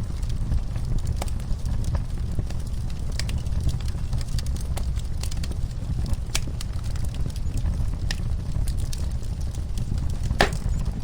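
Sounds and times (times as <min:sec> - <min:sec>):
low rumble of burning: 0:00.0 - 0:11.0
wood fire crackling: 0:00.2 - 0:11.0.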